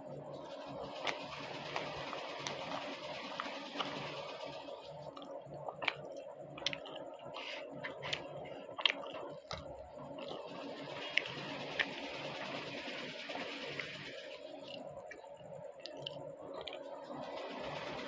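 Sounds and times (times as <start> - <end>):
person chewing wetly: 1.0 - 4.0, 4.9 - 12.7, 14.6 - 17.1.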